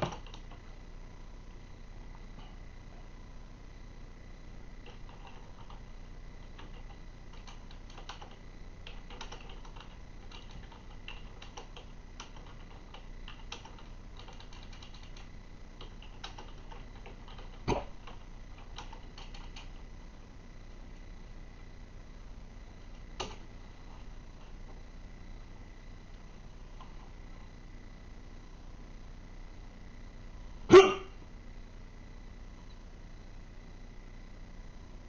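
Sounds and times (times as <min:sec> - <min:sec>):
person hiccuping: 0:30.7 - 0:31.2.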